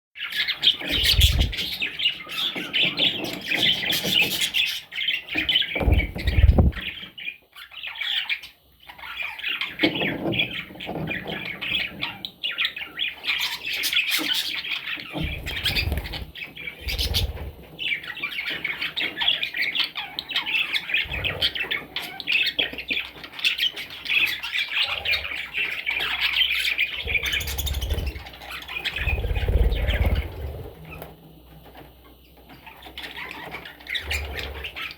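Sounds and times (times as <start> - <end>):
budgerigars chattering and squawking: 0.2 - 31.1, 31.8 - 34.9
low thumps: 5.8 - 6.8.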